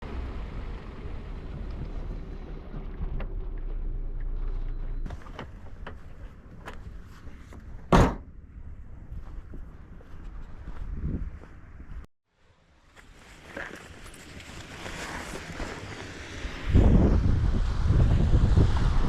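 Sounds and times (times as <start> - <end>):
low outdoor rumbling: 0.0 - 12.0
loud thump: 7.9 - 8.3.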